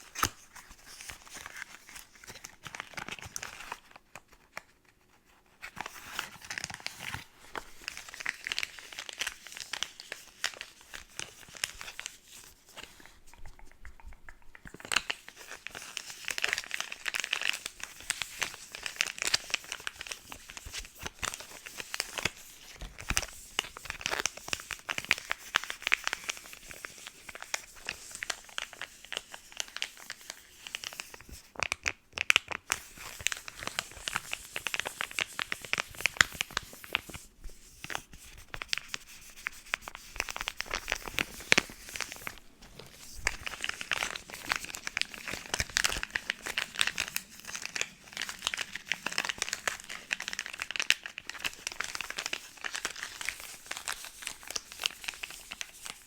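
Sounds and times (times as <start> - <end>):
packaging crinkling: 5.6 - 13.1, 14.6 - 56.0.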